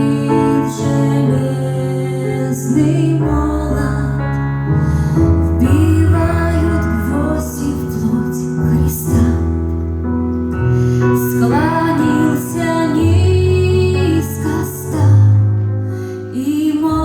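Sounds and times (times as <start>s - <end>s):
woman singing with vibrato: 0.0s - 4.4s, 5.6s - 9.6s, 11.2s - 15.5s, 16.3s - 17.0s
steady bass notes: 0.0s - 17.0s.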